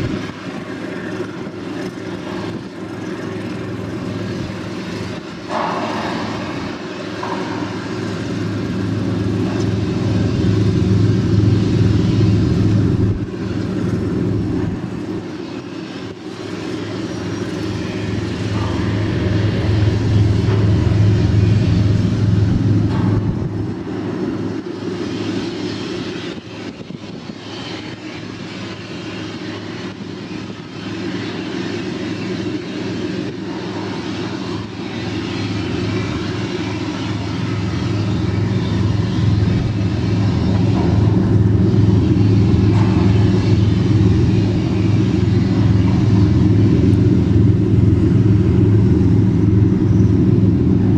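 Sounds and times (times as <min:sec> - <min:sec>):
boat engines droning: 0:00.0 - 0:50.9.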